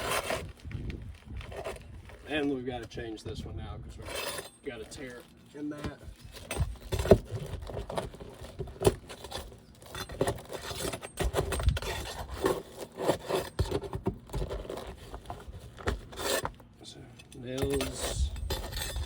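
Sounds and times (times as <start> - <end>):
scraper scraping roof shingles: 0.0 - 0.6, 3.9 - 16.7, 17.6 - 19.0.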